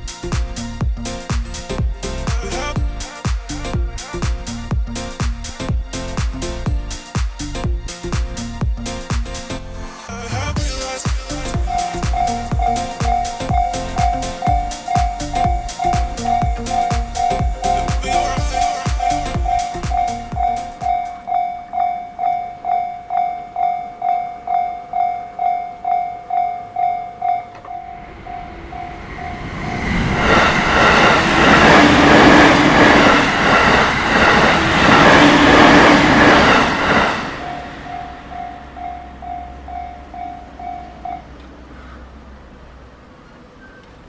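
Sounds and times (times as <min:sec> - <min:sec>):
train passing: 0:00.0 - 0:43.7
train wheels clacking: 0:10.6 - 0:21.2, 0:29.0 - 0:39.6.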